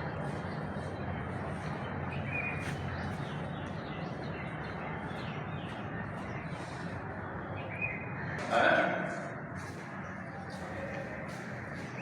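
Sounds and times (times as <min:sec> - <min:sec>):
faint birds chirping: 0:09.6 - 0:12.0.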